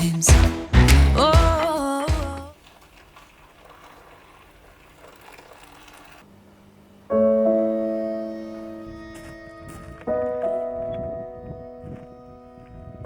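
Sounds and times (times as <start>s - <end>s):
piano chord ringing: 7.1s - 13.0s.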